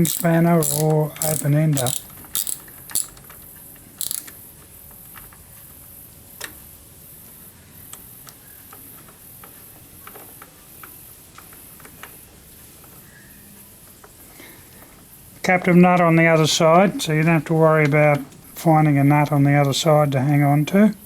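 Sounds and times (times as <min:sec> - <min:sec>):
hand tools clicking on metal: 0:00.0 - 0:03.2, 0:04.0 - 0:04.3.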